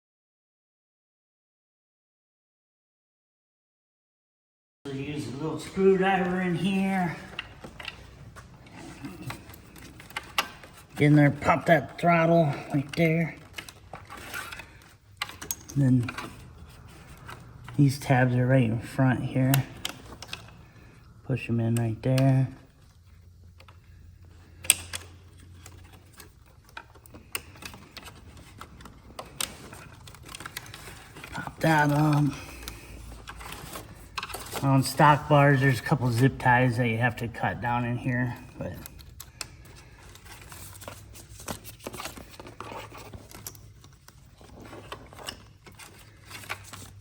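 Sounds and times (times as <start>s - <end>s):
plastic clips clicking: 24.5s - 34.6s.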